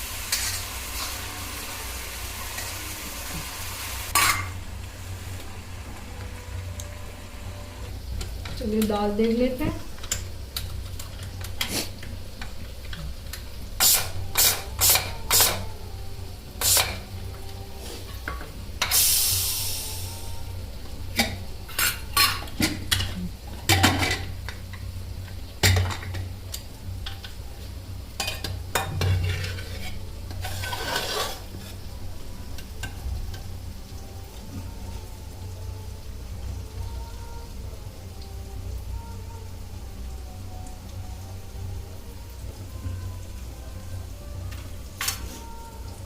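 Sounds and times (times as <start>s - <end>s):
food sizzling in a pan: 0.0s - 46.0s
cookware and spoon clinking: 4.1s - 4.6s, 28.2s - 31.7s
short hiss: 18.9s - 20.0s.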